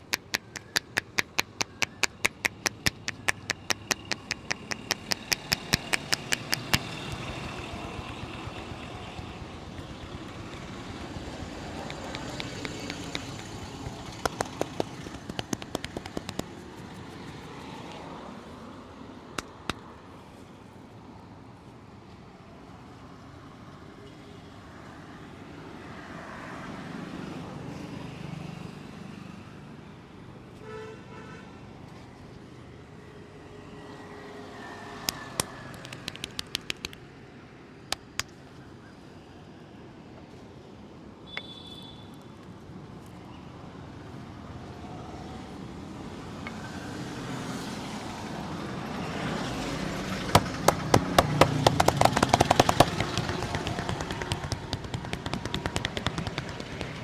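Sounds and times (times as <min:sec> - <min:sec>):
hands slapping head: 0:00.0 - 0:07.2, 0:11.8 - 0:16.8, 0:35.1 - 0:37.0, 0:50.4 - 0:57.0
street traffic passing: 0:00.0 - 0:57.0
vehicle horn toot: 0:41.3 - 0:42.2.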